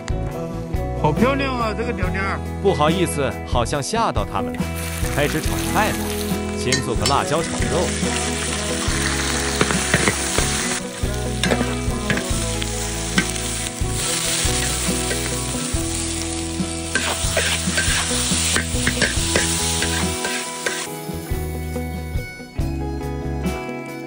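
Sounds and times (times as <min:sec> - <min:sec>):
meat sizzling in a pan: 0:04.6 - 0:21.6.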